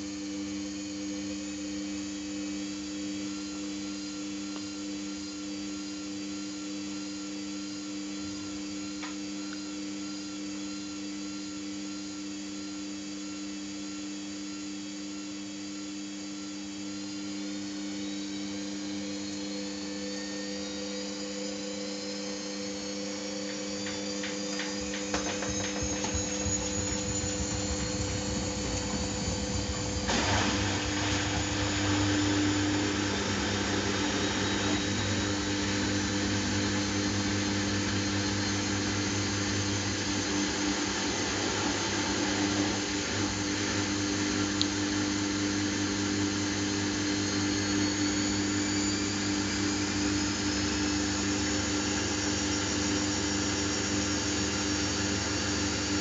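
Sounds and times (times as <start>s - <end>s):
washing machine spinning: 18.6s - 56.0s.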